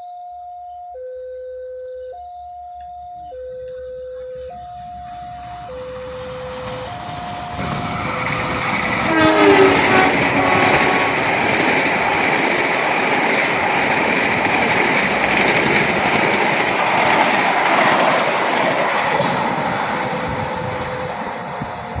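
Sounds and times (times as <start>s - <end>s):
train wheels rushing on rails: 5.8s - 22.0s
train horn blast: 7.6s - 14.5s
two-tone crossing warning signal: 7.6s - 21.6s.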